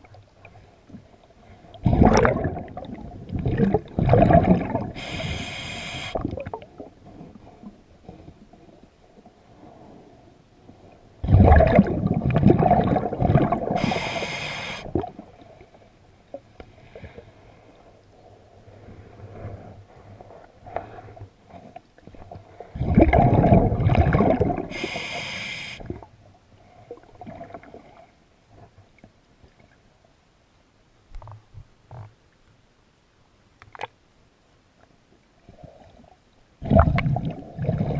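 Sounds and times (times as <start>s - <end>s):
exhaled bubbles rumbling underwater: 0.0s - 10.0s, 10.7s - 17.3s, 21.5s - 28.1s, 35.5s - 37.9s
hissing inhale through regulator: 4.9s - 6.3s, 13.7s - 15.0s, 24.7s - 26.0s
faint clicks and knocks: 28.6s - 29.8s, 31.1s - 32.6s, 33.5s - 34.0s.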